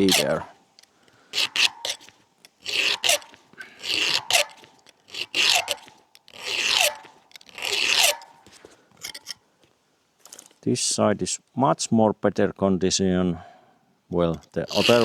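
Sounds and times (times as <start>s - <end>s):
file rasping on chain teeth: 0.0s - 0.5s, 1.3s - 9.4s, 14.5s - 15.0s.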